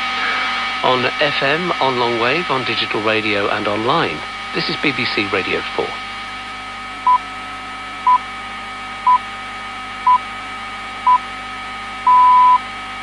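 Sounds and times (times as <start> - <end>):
radio static hiss: 0.0 - 11.5
faint humming tones: 0.0 - 13.0
short time signal pips: 7.0 - 7.3, 8.0 - 8.2, 9.0 - 9.2, 10.1 - 10.3, 11.0 - 11.3, 12.1 - 12.7.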